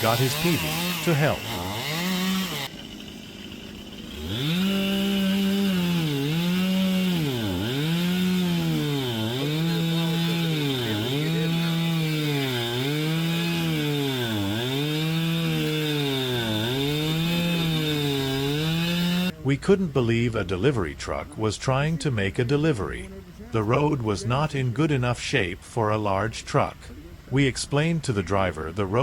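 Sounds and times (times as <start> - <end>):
chainsaw cutting through tree: 0.0 - 19.4.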